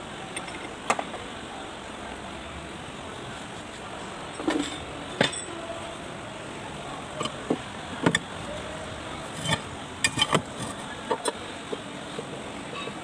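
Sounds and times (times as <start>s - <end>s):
metallic clinks and knocks: 4.4s - 5.6s, 9.3s - 11.4s.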